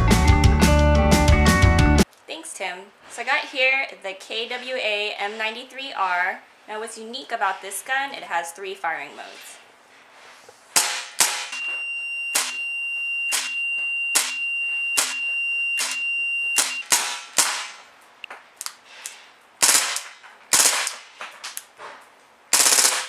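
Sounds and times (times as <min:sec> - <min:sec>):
airsoft pistol shots: 0:10.8 - 0:11.6, 0:12.4 - 0:12.6, 0:13.3 - 0:14.4, 0:15.0 - 0:15.2, 0:15.8 - 0:16.0, 0:16.6 - 0:17.8, 0:19.6 - 0:21.2, 0:22.5 - 0:23.0
steady high tone: 0:11.5 - 0:16.9.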